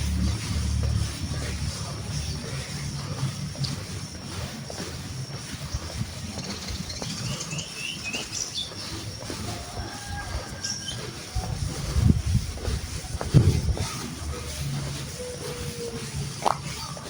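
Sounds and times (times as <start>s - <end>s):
low rumble: 0.0s - 7.6s, 11.3s - 16.9s
bird chirping: 5.4s - 11.5s.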